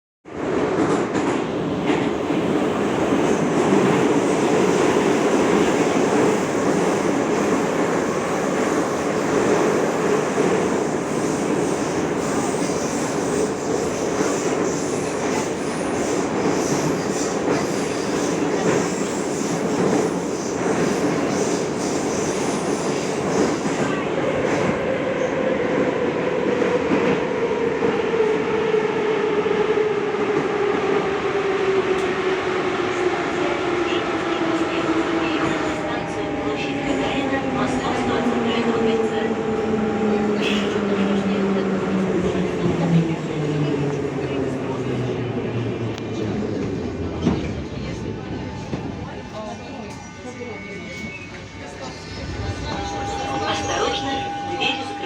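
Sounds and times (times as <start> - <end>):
humming tone sliding down in pitch: 50.4 - 55.0.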